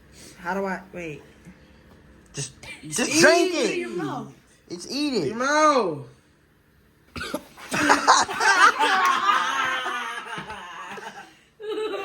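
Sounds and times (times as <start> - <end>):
person coughing and sputtering: 7.1 - 8.3
laughter: 7.6 - 12.0.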